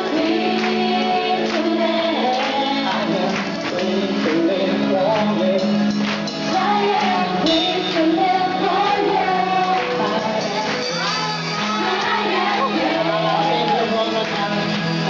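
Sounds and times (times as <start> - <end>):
live band playing: 0.0 - 15.0
people singing: 0.0 - 15.0.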